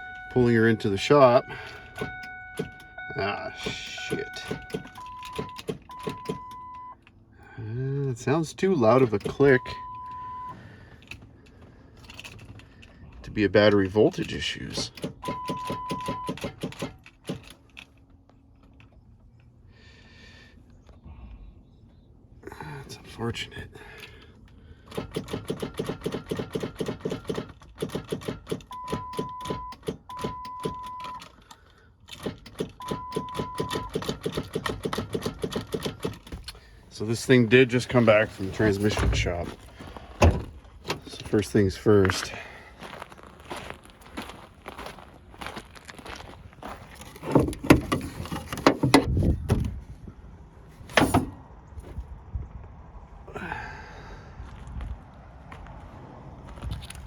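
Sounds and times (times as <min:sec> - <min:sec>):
electronic warning beep: 0:00.0 - 0:07.0, 0:09.2 - 0:10.6, 0:15.2 - 0:16.4, 0:28.7 - 0:31.2, 0:32.8 - 0:34.0
starter rapid clicking: 0:32.1 - 0:36.6
clunks and knocks: 0:37.8 - 0:41.4, 0:46.8 - 0:49.8, 0:50.9 - 0:52.0.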